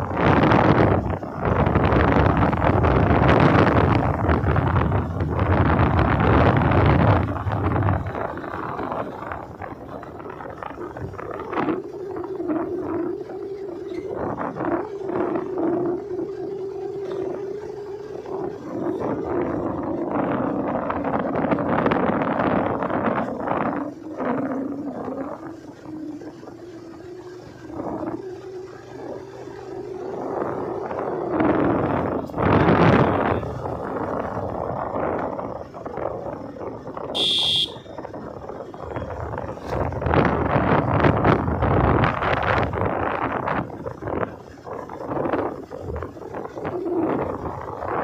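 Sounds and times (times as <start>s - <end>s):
motorcycle engine and road noise: 0.0s - 48.0s
wind buffeting microphone: 0.0s - 48.0s.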